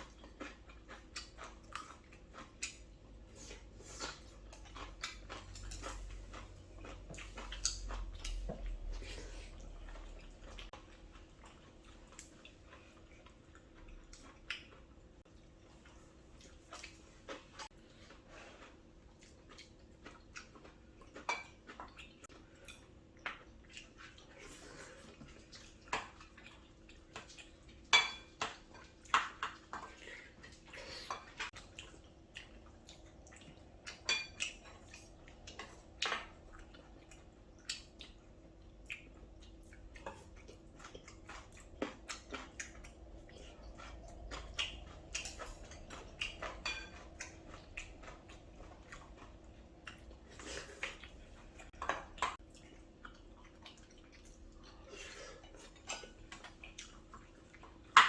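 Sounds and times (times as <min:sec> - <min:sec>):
cutlery clinking against plates: 0:27.1 - 0:29.9, 0:33.9 - 0:34.8, 0:45.2 - 0:47.4.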